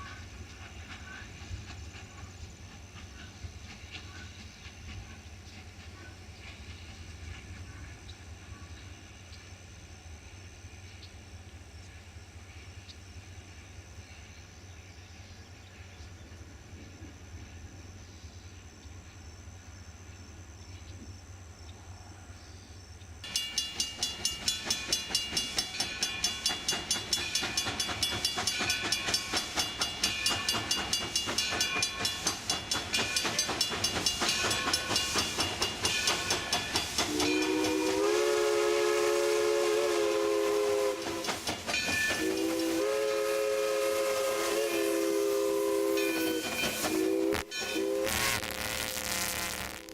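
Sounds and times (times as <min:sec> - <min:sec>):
hissing steam: 0:00.0 - 0:10.9, 0:23.3 - 0:49.9
steam locomotive chuffing: 0:00.0 - 0:15.6, 0:23.2 - 0:48.4
faint outdoor background: 0:00.0 - 0:49.9
steam whistle blast: 0:37.0 - 0:49.9.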